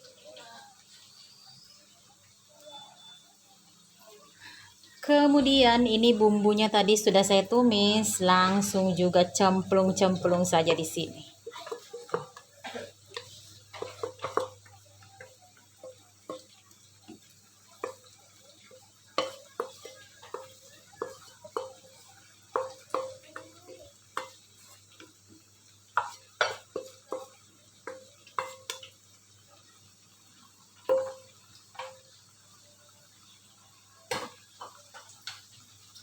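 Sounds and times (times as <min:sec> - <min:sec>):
spoon clinking in metal pot: 0:30.9 - 0:32.0.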